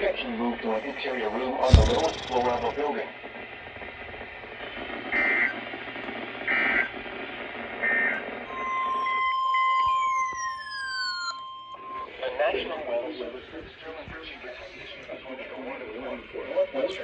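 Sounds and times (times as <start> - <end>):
radio hiss: 0.2 - 9.2, 12.0 - 17.0
faint falling whistles: 1.7 - 2.8, 7.9 - 12.2
piercing warning alert tone: 1.7 - 2.8, 8.5 - 12.1
screeching digital chirps: 1.7 - 2.8, 8.5 - 12.2.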